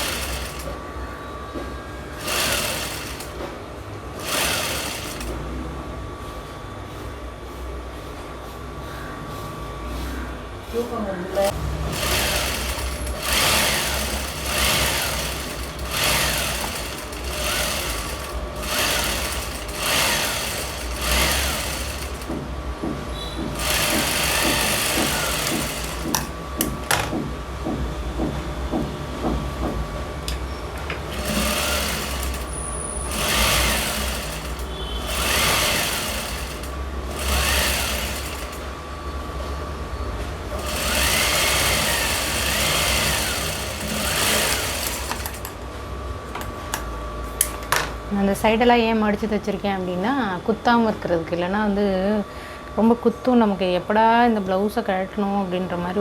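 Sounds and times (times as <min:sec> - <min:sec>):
sewing machine stitching: 0:00.0 - 0:00.8, 0:02.2 - 0:03.5, 0:04.1 - 0:05.4, 0:11.9 - 0:22.4, 0:23.2 - 0:26.7, 0:31.1 - 0:38.7, 0:40.6 - 0:45.6.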